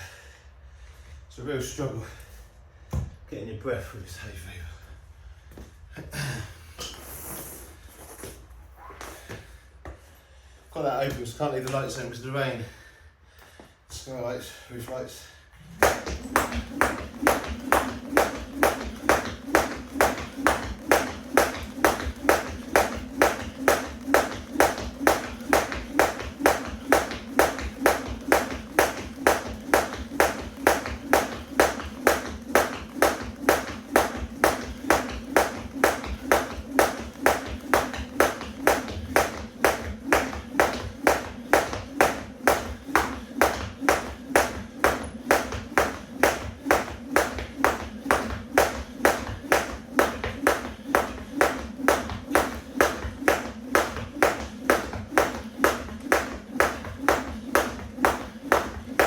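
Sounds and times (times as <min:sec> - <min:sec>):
jump rope slapping the floor: 0:15.6 - 0:59.0.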